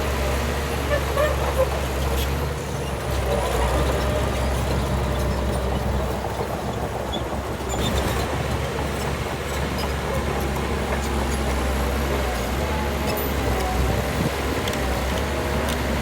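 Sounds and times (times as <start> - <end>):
diesel machinery running: 0.0 - 16.0.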